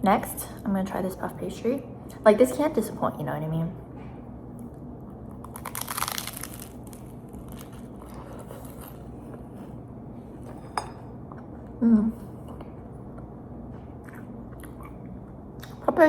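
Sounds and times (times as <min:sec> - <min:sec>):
chewing crackles: 0:04.6 - 0:09.8, 0:14.0 - 0:15.8
crunch of biting pastry: 0:05.2 - 0:09.2.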